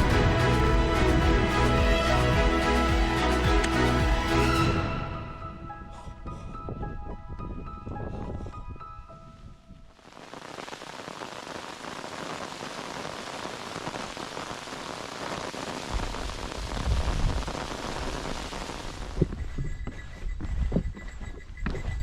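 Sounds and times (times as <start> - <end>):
steady rain falling: 0.0 - 4.8, 10.0 - 19.3
low rumble: 0.0 - 8.3.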